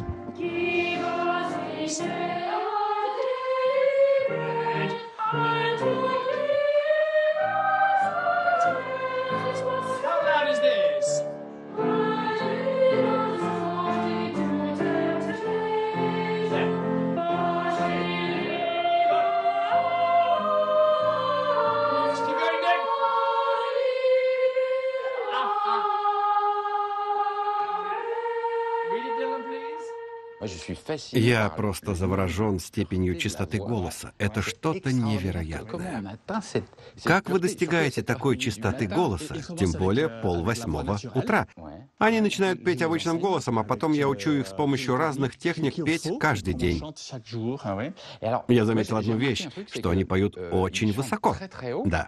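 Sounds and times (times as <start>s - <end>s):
boys' choir singing: 0.0s - 30.4s.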